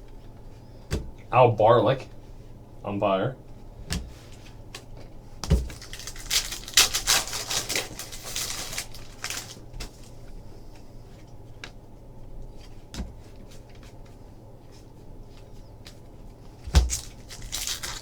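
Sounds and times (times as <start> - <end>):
cards crinkling and clicking: 5.6 - 10.2, 16.7 - 18.0.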